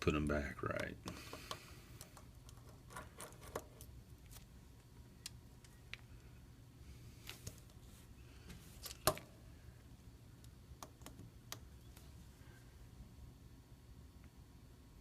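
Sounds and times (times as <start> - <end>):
small tools and screws clicking: 0.8 - 3.9.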